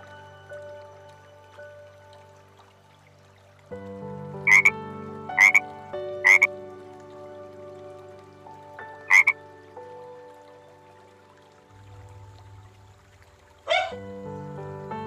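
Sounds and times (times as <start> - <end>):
background music with held notes: 0.0 - 15.0
loud animal calls: 13.7 - 14.0.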